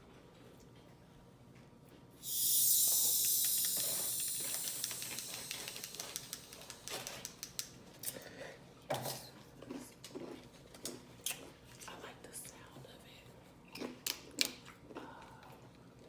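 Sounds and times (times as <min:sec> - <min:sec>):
soda fizzing: 0:02.2 - 0:07.4.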